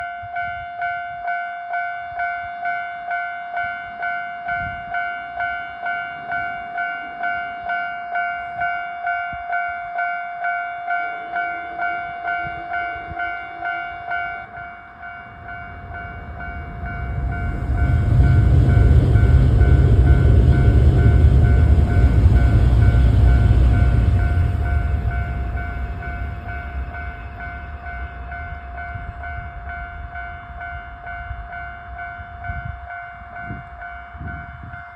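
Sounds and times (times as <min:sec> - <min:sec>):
crossing warning bell dinging: 0:00.0 - 0:34.9
train rumbling past: 0:11.2 - 0:34.9.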